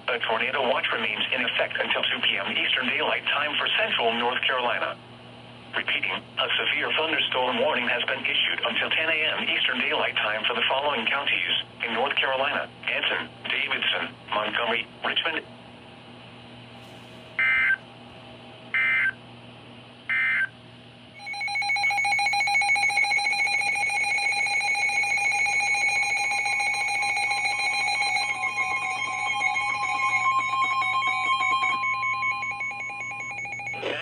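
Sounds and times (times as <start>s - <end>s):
digital data tone bursts: 21.2s - 34.0s
steady attention tone: 21.2s - 34.0s.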